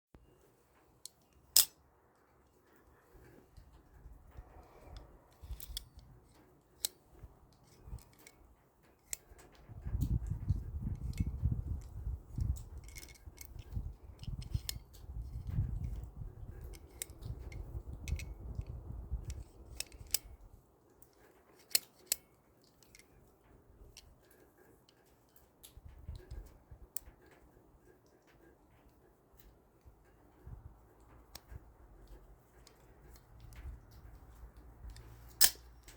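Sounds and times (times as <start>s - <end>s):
knife metallic clicks: 1.0s - 1.8s, 34.8s - 35.9s.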